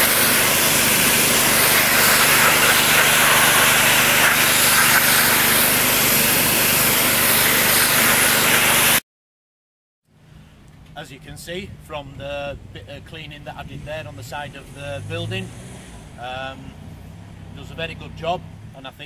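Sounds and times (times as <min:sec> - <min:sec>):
pressure washer spraying: 0:00.0 - 0:09.0.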